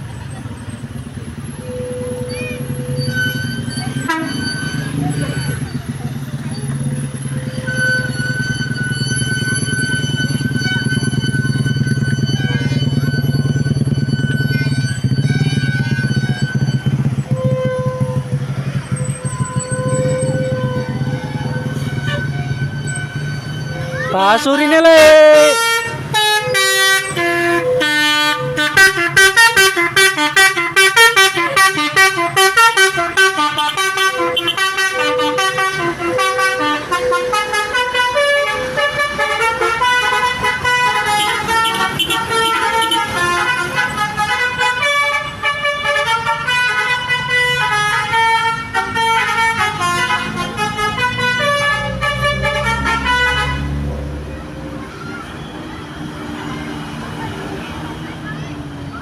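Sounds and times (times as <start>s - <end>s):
musical bus horn playing a tune: 1.4s - 5.9s, 6.8s - 53.9s.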